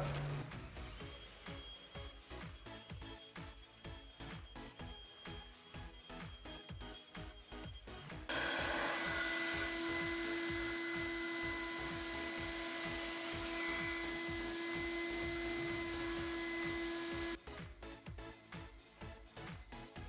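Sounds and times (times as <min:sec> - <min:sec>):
background music with a beat: 0:00.0 - 0:08.8, 0:10.0 - 0:20.0
machine rushing and humming: 0:08.3 - 0:17.4.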